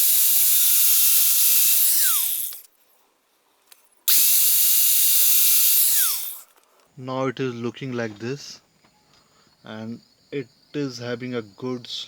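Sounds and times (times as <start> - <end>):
power tool grinding metal: 0.0 - 2.7, 4.1 - 6.4.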